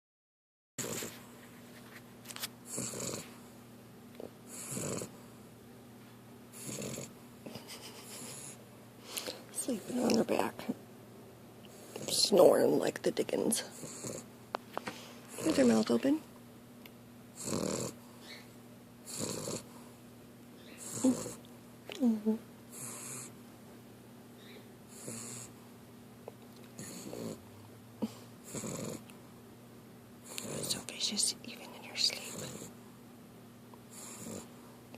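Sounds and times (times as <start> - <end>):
puppy snoring: 0.8 - 1.3, 2.6 - 3.4, 4.2 - 5.4, 6.5 - 8.6, 11.7 - 12.8, 13.5 - 14.3, 15.3 - 16.2, 17.3 - 20.0, 20.6 - 23.4, 24.4 - 25.6, 26.7 - 29.1, 30.2 - 31.2, 32.0 - 32.8, 33.9 - 34.6.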